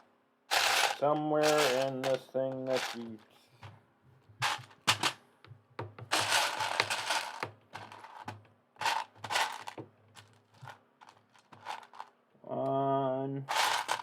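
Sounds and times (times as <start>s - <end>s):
plastic bricks clattering: 0.5s - 3.2s, 4.4s - 5.2s, 6.1s - 12.1s, 13.5s - 14.0s.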